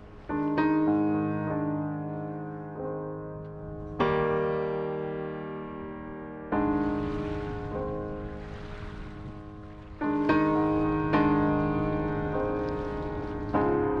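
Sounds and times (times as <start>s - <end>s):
gentle piano chords: 0.0s - 14.0s.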